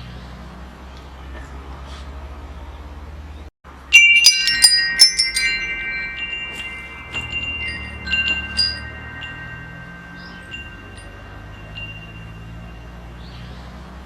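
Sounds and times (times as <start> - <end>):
metal wind chimes ringing: 3.7 - 14.0.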